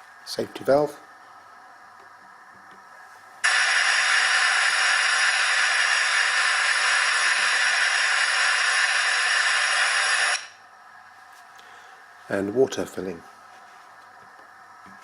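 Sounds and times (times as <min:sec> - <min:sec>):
steam safety valve hissing: 0:03.4 - 0:10.6.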